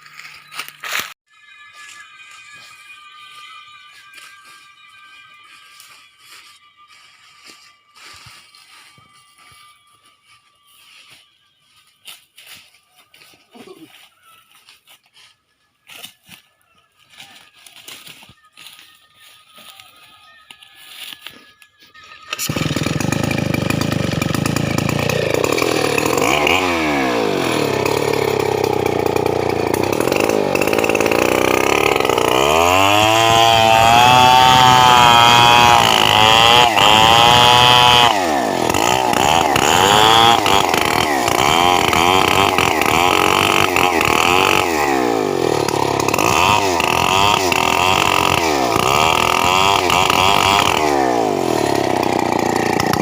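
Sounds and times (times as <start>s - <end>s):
chainsaw revving: 22.2s - 53.0s.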